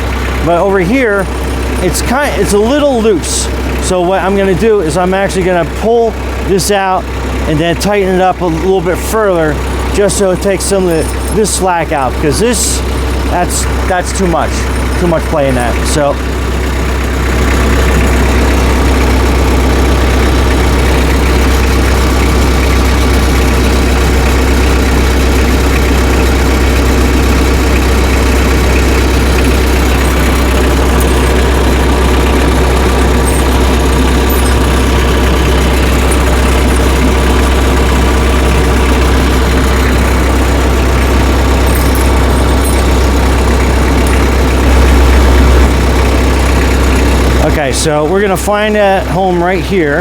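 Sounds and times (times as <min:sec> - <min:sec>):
tractor engine idling: 0:00.0 - 0:50.0.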